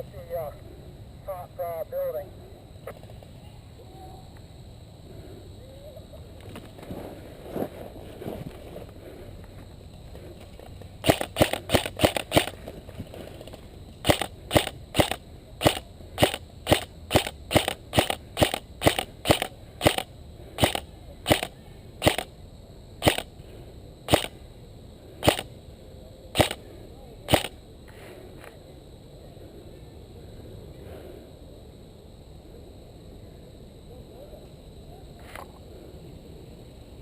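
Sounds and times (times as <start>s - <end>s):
airsoft rifle shots: 11.0s - 12.6s, 14.0s - 22.3s, 23.0s - 23.3s, 24.1s - 24.4s, 25.2s - 25.5s, 26.3s - 26.6s, 27.3s - 27.6s.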